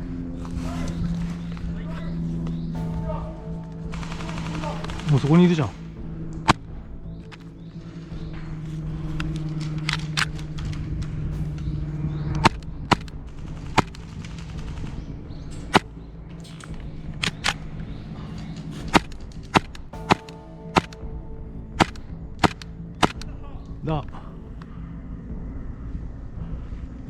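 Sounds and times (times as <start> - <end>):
airsoft gunfire pops: 21.8 - 23.3.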